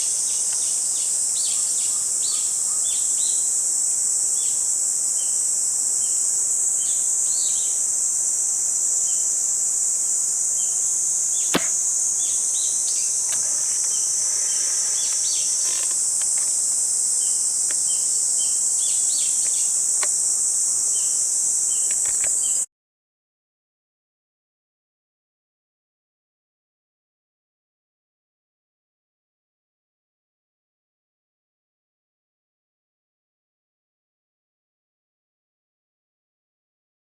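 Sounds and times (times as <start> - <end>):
insect chorus: 0.0 - 22.7
airsoft rifle shot snap: 11.5 - 14.2
bird chirps: 11.6 - 16.6.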